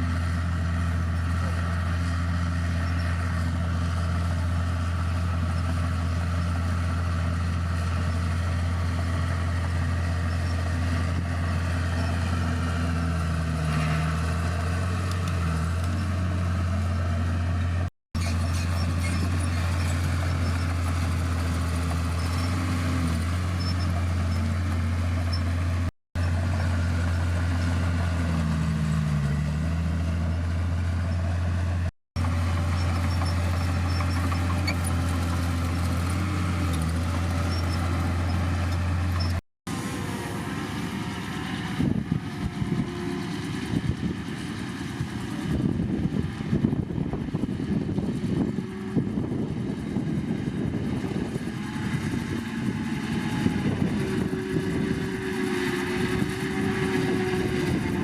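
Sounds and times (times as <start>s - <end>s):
heavy diesel engine running: 0.0s - 58.0s.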